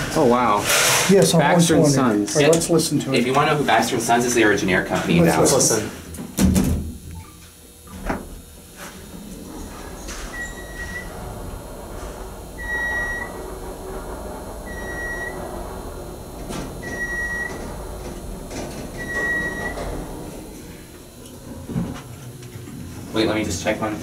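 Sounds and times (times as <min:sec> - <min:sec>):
low steady rumble: 0:07.0 - 0:24.0.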